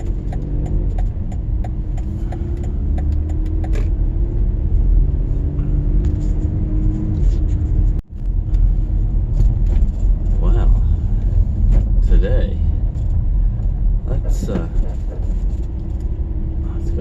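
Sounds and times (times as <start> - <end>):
turn signal ticking: 0.0 - 4.9
car engine and road rumble: 0.0 - 17.0.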